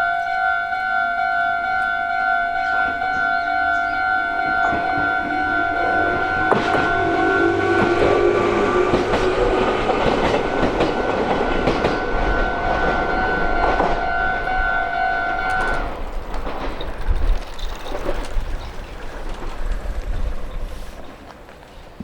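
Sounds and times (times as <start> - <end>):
level crossing warning bell: 0.0 - 16.0
train wheels clacking on rail joints: 1.5 - 22.0.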